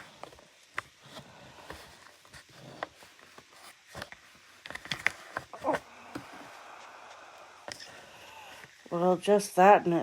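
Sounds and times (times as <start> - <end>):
plastic parts clicking and tapping: 1.7 - 6.2.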